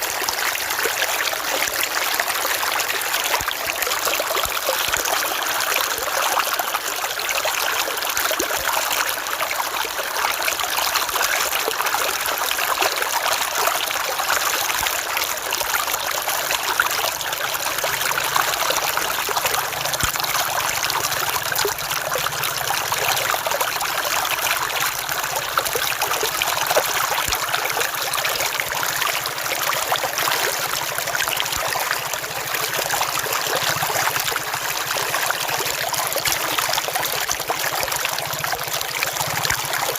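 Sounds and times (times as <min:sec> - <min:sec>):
river water flowing: 0:00.0 - 0:39.9.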